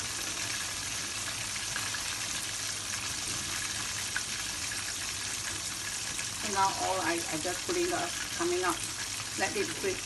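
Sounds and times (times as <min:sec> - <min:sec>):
chicken wings sizzling in hot oil: 0:00.0 - 0:10.0.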